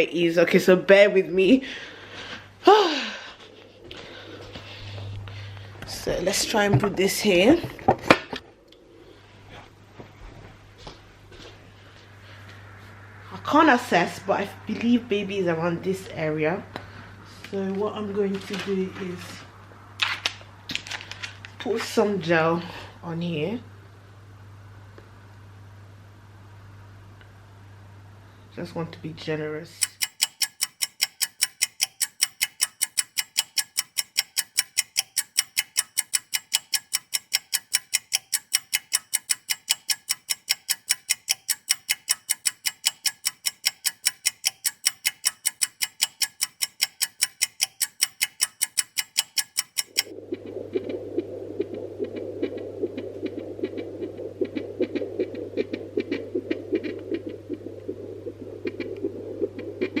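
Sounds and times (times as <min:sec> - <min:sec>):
steady hum with rapid flutter: 0:29.7 - 1:00.0
fetal doppler pulsing: 0:29.8 - 1:00.0.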